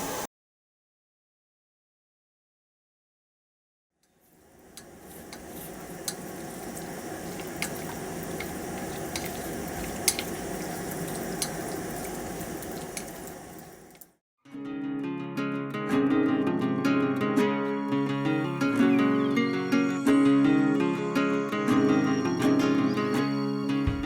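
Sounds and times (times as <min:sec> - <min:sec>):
campfire crackling and popping: 0:04.6 - 0:14.1.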